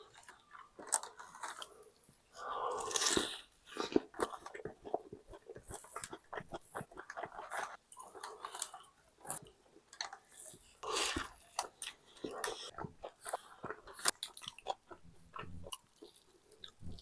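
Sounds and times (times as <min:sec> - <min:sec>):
crunchy food bite: 0:00.0 - 0:09.4
crunchy chewing: 0:00.0 - 0:17.0.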